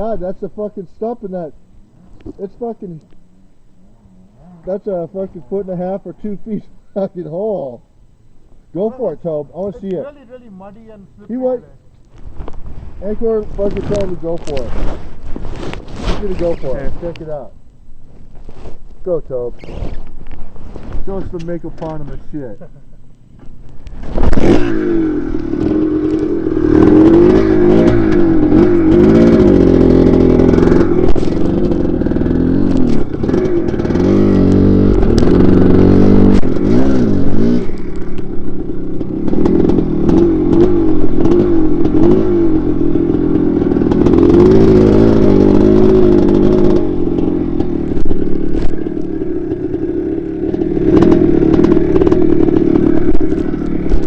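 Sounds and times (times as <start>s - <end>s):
dirt bike engine revving: 0.0s - 7.8s, 8.6s - 17.6s, 23.4s - 54.0s.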